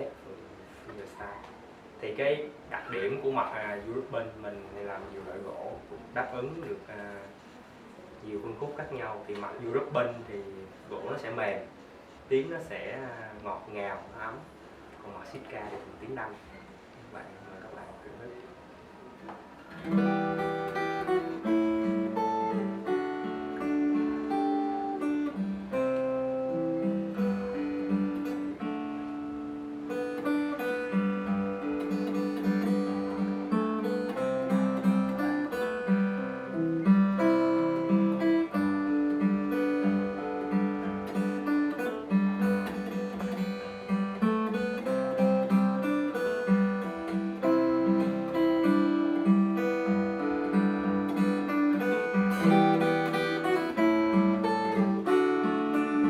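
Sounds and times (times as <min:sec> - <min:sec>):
fingerstyle acoustic guitar: 0:19.3 - 0:56.0.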